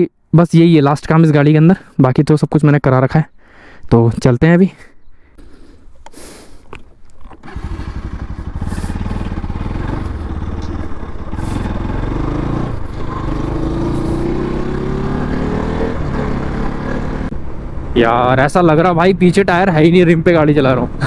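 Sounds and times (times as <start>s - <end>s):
motorcycle engine accelerating: 7.2s - 17.4s.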